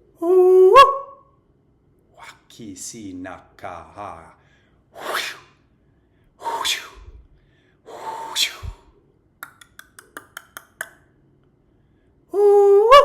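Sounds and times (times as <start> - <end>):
person exhaling with hiss: 5.0 - 5.5, 6.4 - 9.0.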